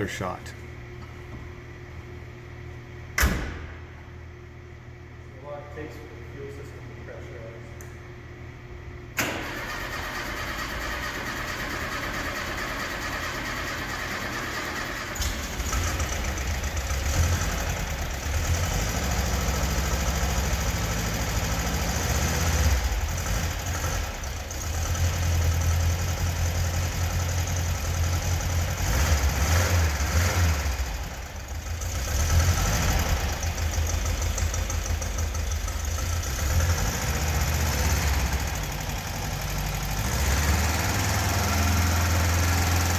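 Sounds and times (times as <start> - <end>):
car engine running and revving: 15.6 - 42.9.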